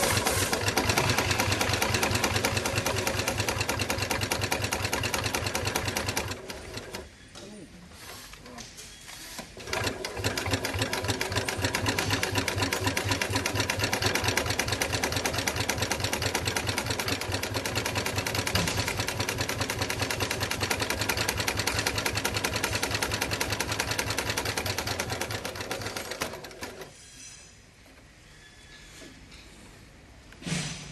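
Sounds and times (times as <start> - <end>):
sewing machine motor hum: 0.0 - 7.1, 9.4 - 26.9
sewing machine needle clatter: 9.6 - 26.9.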